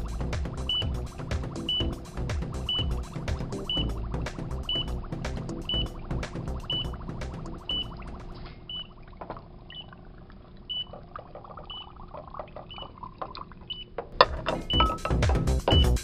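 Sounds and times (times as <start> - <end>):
background music: 0.0 - 8.3, 14.2 - 16.0.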